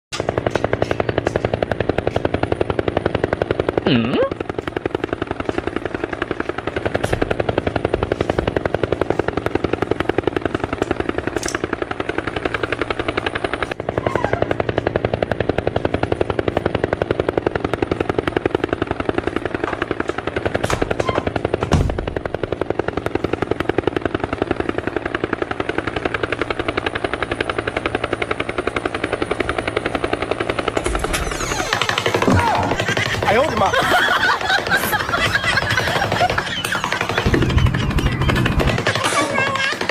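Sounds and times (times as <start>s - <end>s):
helicopter rotor chop: 0.1s - 39.9s.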